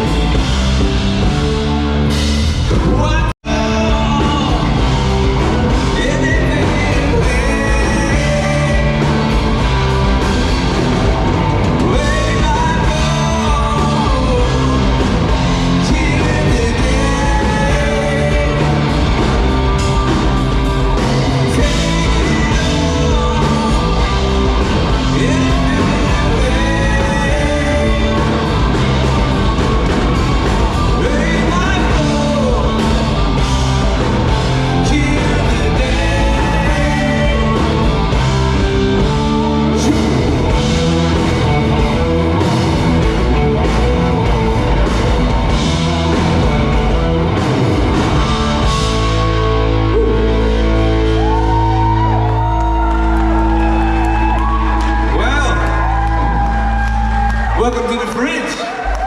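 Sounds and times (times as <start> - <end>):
live rock band playing: 0.0 - 59.0
person singing: 2.8 - 10.2, 11.2 - 45.0.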